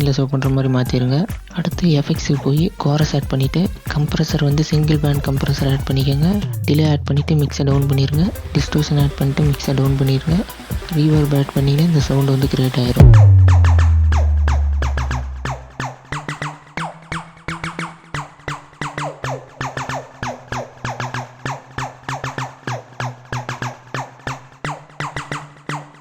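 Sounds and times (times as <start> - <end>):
deep bass tone: 4.8 - 10.4, 12.4 - 15.8
synthesizer downward zaps: 6.1 - 15.9
low synth drone: 6.3 - 11.0, 12.4 - 15.8.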